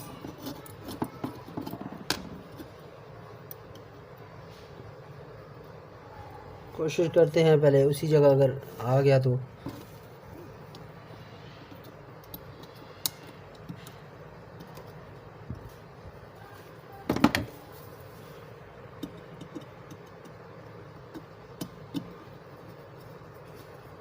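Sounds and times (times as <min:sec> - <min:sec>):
small clicks and taps: 0:19.0 - 0:22.2.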